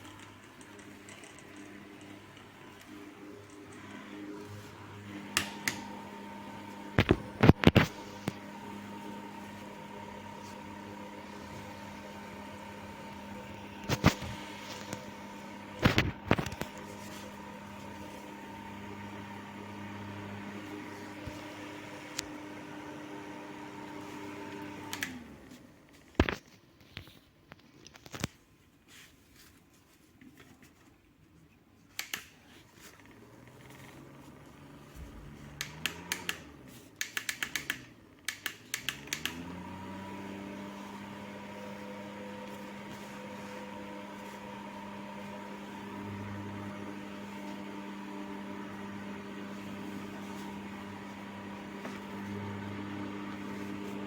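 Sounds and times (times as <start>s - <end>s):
electric fan motor humming: 0.0s - 25.6s, 33.1s - 54.0s
sharp clicks: 37.0s - 39.4s.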